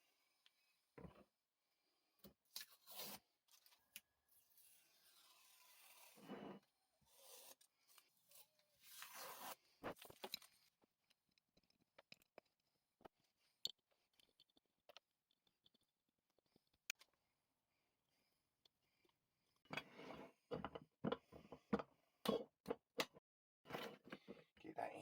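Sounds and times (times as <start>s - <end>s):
faint scraping and rubbing: 2.7s - 10.5s.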